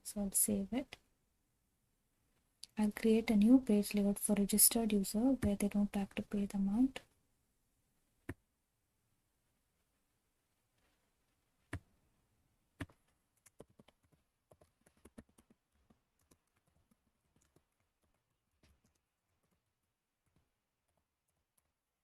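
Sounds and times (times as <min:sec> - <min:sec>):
keyboard typing: 0:12.8 - 0:18.2.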